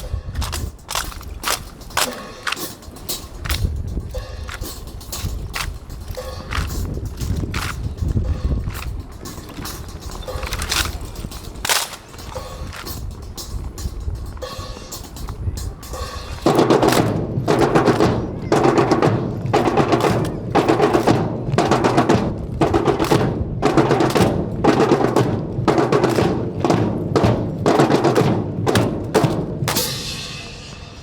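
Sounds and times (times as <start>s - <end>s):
drum cadence: 0.0s - 31.0s
bright ringing drum hit: 29.7s - 31.0s.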